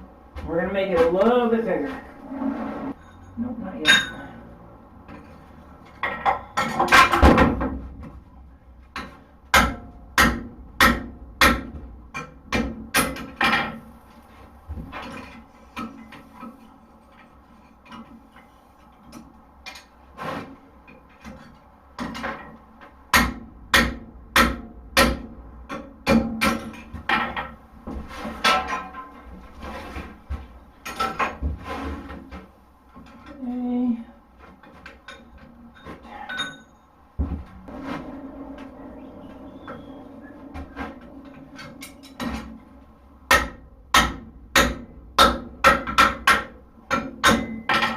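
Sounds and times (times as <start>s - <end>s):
hammer striking steel on anvil: 9.5s - 13.7s, 23.1s - 26.8s, 43.3s - 47.9s.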